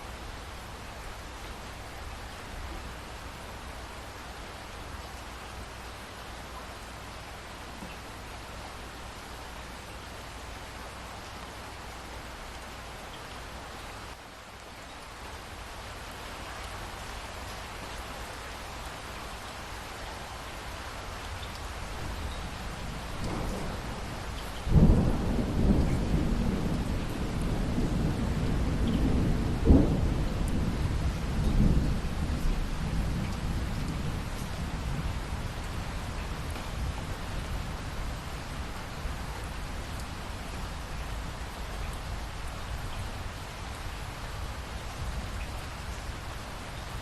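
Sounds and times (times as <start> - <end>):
steady rain falling: 0.0 - 47.0
thunderclap rumbling: 23.2 - 37.9.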